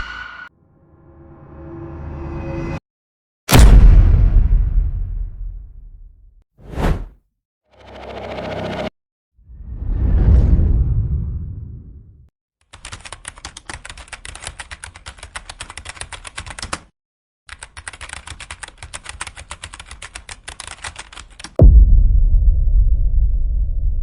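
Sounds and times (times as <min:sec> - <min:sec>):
loud deep boom: 0:03.5 - 0:06.2, 0:21.6 - 0:24.0.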